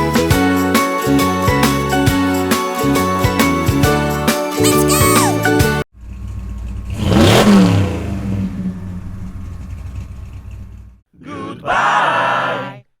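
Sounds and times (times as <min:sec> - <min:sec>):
car engine revving past: 0:06.2 - 0:10.2
low engine rumble: 0:08.2 - 0:11.0.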